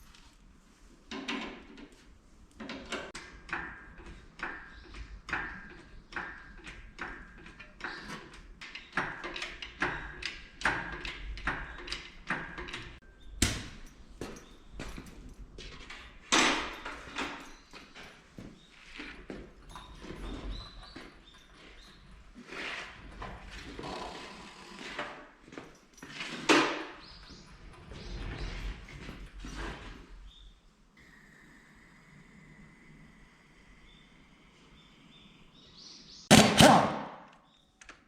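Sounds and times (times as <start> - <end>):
metallic knocks and clanks: 2.6 - 22.4.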